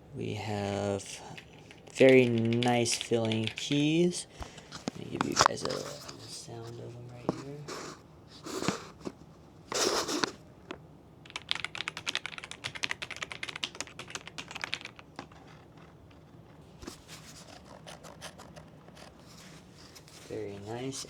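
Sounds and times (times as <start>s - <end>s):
mechanical keyboard typing: 1.4s - 3.9s, 11.3s - 15.9s.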